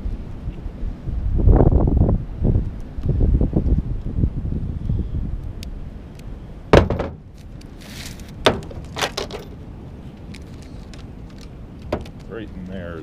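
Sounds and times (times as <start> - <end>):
cable scraping: 7.4 - 12.7
metal cable clanking: 8.4 - 9.6.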